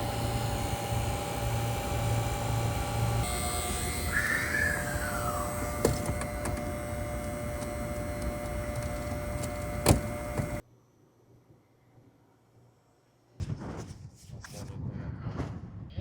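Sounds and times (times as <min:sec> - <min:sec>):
mechanical running noise: 0:00.0 - 0:10.6
faint hum of constant tones: 0:00.0 - 0:13.4.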